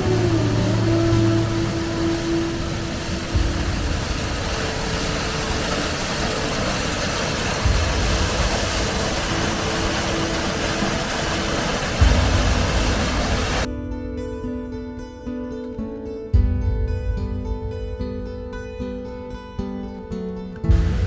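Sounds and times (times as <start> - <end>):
low rumble: 0.0 - 13.7
waterfall roaring: 0.0 - 13.7.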